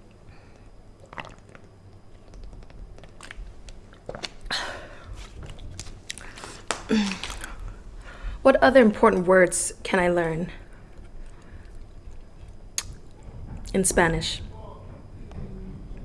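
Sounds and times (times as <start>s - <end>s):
person chewing food: 0.2s - 8.4s, 10.6s - 13.2s
wet mouth clicks and smacks: 1.0s - 4.5s, 5.1s - 7.8s, 10.9s - 13.2s.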